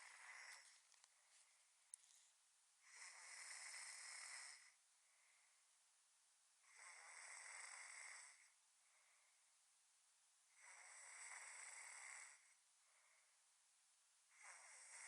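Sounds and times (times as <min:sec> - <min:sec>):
person snoring: 0:00.0 - 0:00.7, 0:02.8 - 0:04.8, 0:06.7 - 0:08.5, 0:10.6 - 0:12.5.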